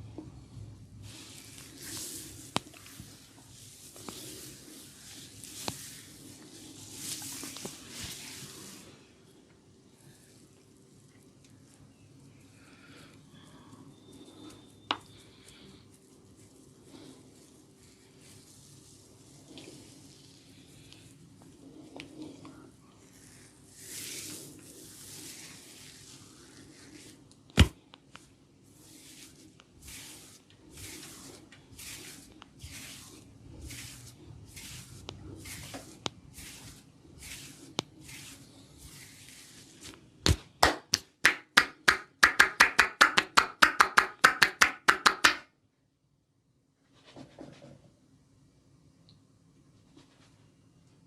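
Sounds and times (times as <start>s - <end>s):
hands rubbing through oiled hair: 1.0s - 9.1s, 14.0s - 45.4s
hands slapping on head: 27.6s - 27.8s, 40.2s - 45.5s.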